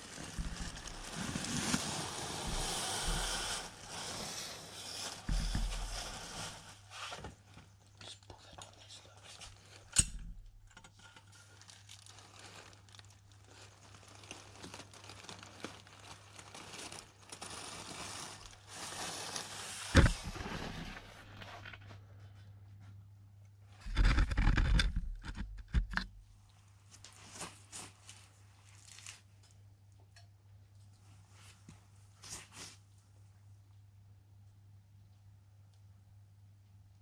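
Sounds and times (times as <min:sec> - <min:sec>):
bags crinkling and rustling: 0:00.0 - 0:07.9, 0:10.9 - 0:22.0, 0:26.8 - 0:29.5.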